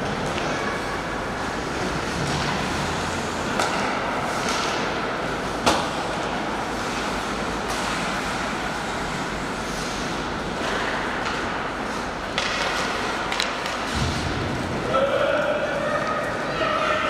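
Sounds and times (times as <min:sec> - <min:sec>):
arena noise: 0:00.0 - 0:17.0
sharp puck crack: 0:03.5 - 0:04.9, 0:12.3 - 0:14.2
skates swishing scrapes: 0:06.7 - 0:10.8.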